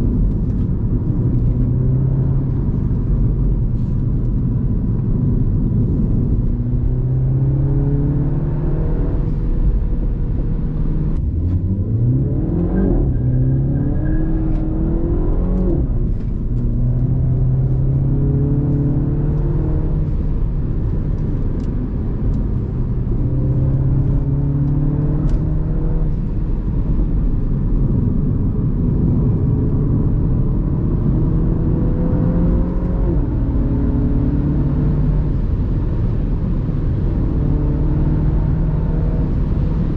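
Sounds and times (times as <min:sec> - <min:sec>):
car engine revving: 0:00.0 - 0:39.9
tyre and road noise: 0:00.0 - 0:39.9.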